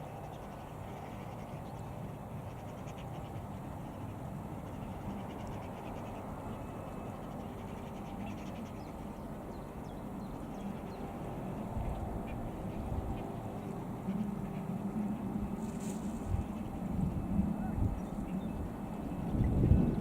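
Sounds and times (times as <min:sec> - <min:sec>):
strong wind buffeting microphone: 0:11.0 - 0:14.0, 0:14.7 - 0:20.0.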